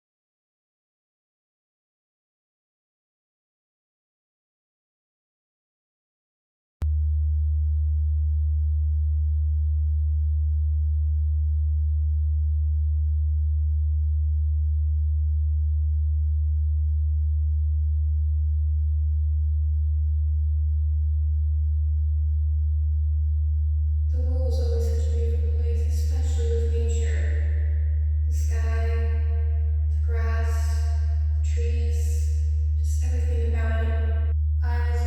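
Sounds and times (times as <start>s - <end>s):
low electronic drone tone: 18.9s - 35.0s.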